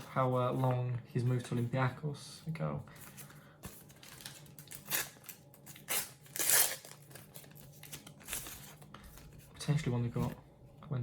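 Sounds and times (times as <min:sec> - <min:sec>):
sticker packets crinkling: 0:03.8 - 0:09.1.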